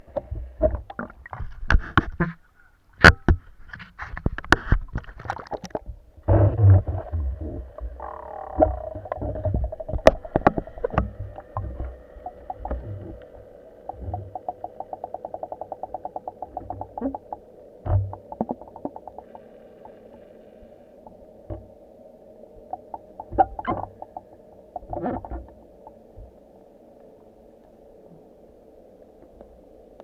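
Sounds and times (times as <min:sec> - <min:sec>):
water sloshing and gurgling: 0:00.0 - 0:02.5, 0:03.4 - 0:26.5
low rumble: 0:05.9 - 0:21.9
irregular knocks and clicks: 0:07.8 - 0:20.2
fast even ticking: 0:08.0 - 0:20.2.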